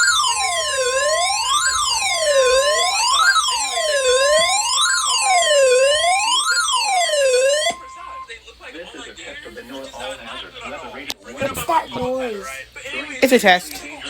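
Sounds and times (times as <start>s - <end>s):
electronic siren sweeping: 0.0s - 8.3s.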